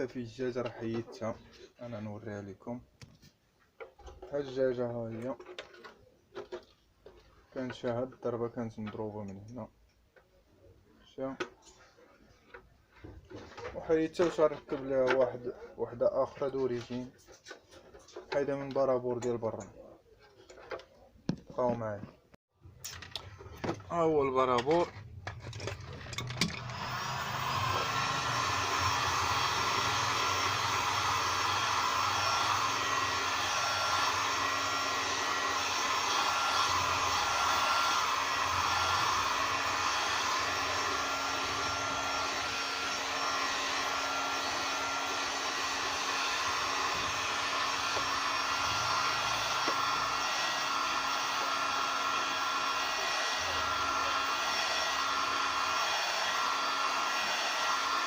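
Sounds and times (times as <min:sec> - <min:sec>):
heat gun blowing: 0:26.1 - 0:58.0.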